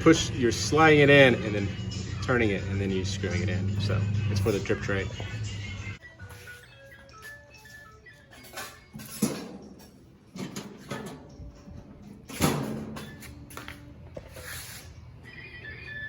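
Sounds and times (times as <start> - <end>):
sheet metal knocks and scrapes: 8.4 - 11.3.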